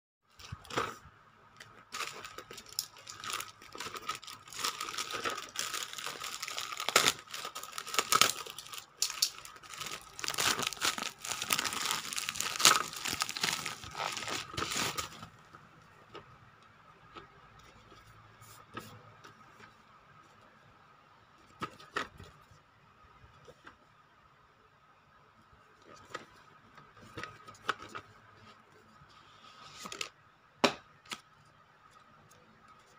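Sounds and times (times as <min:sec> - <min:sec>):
packaging tearing and crinkling: 0:01.7 - 0:15.3.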